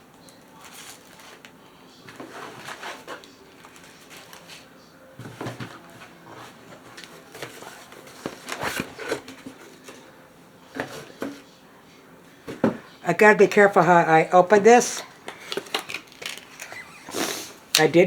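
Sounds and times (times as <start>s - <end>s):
packaging rustling: 0.3s - 10.1s, 15.0s - 18.0s.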